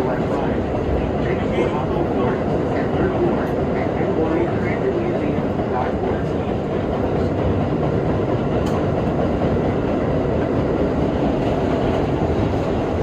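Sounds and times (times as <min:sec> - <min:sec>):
subway train running: 0:00.0 - 0:13.0.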